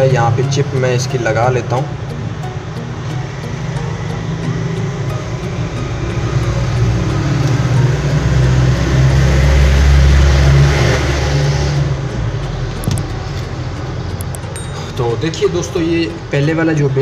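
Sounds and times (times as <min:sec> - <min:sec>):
road traffic engine rumble: 0:00.0 - 0:17.0.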